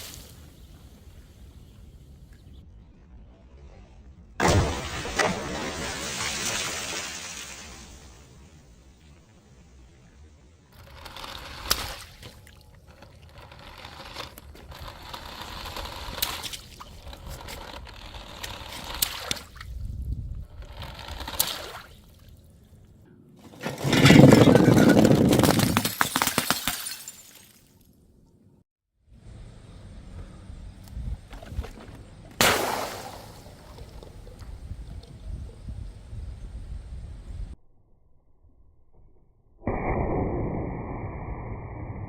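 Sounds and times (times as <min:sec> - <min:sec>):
glass cracking: 0:24.2 - 0:27.6.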